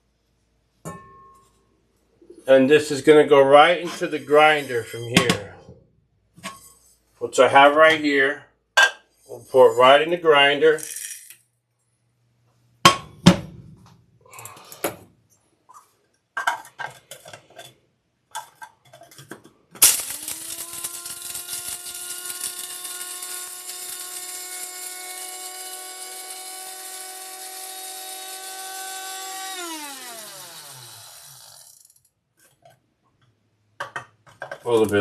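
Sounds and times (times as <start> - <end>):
seeds clattering into grinder: 19.8 - 32.0
spice grinder motor whining: 19.8 - 32.1.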